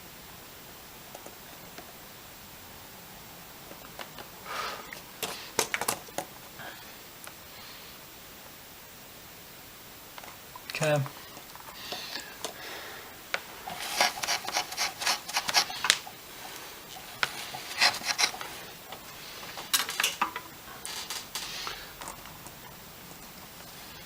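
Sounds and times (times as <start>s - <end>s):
scraping and rubbing handling noise: 3.6s - 7.8s, 10.1s - 24.0s.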